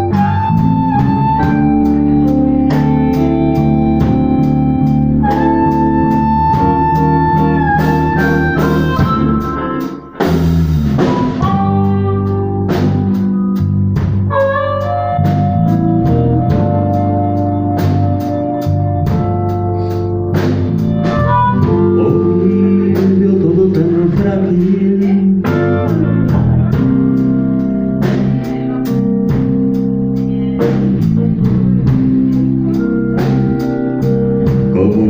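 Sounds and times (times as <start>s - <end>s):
blues band playing instrumental: 0.0s - 35.0s.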